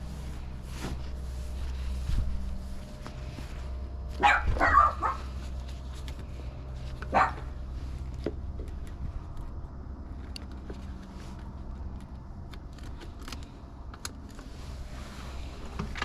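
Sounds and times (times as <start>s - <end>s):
steady low hum: 0.0s - 16.0s
dog barking: 4.2s - 5.3s, 7.1s - 7.5s.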